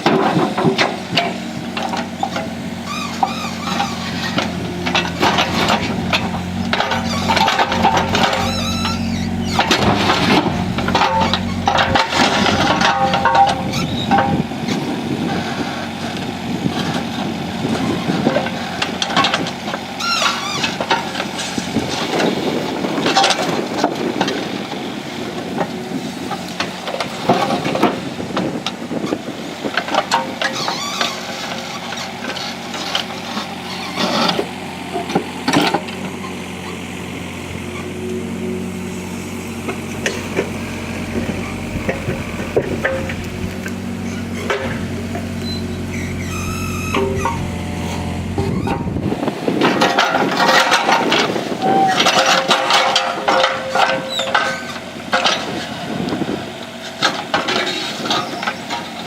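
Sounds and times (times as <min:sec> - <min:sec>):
concrete scraping and clanking: 0:00.0 - 0:22.4, 0:39.5 - 0:59.0
heavy machine engine running: 0:00.0 - 0:59.0.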